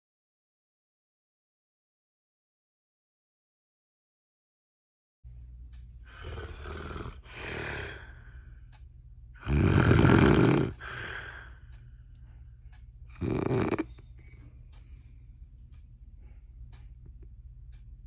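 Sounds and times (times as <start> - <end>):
soft breaths: 5.7 - 17.1
woman snoring loudly: 6.1 - 8.2, 9.4 - 11.4, 13.2 - 13.9.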